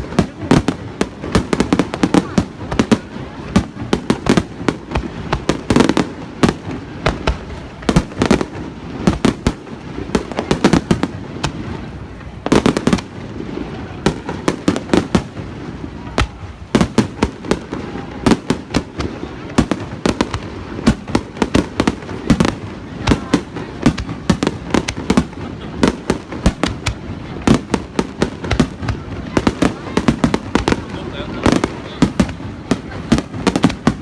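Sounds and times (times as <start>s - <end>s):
fireworks bursting: 0.0s - 34.0s.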